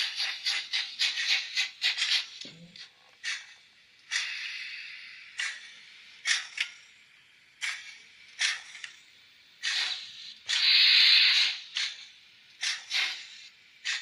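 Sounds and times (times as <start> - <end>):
model train steam chuffs: 0.0 - 2.4, 3.2 - 6.9, 9.6 - 14.0
loud steam hiss: 4.1 - 6.1, 9.6 - 14.0.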